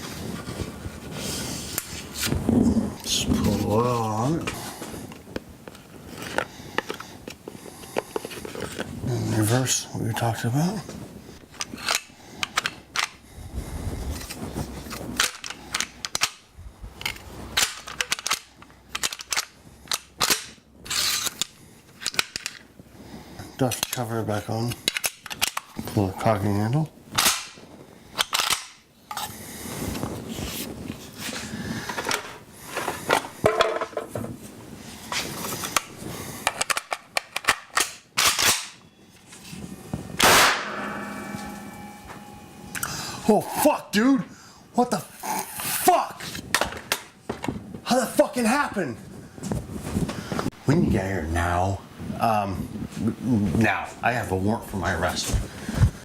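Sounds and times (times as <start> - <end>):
rifle parts clicking and clacking: 11.6 - 13.2, 15.2 - 16.4, 17.0 - 22.6, 24.8 - 25.7, 28.2 - 29.3, 35.6 - 38.8
low handling noise: 39.2 - 43.4
loud gunshot: 40.2 - 41.6.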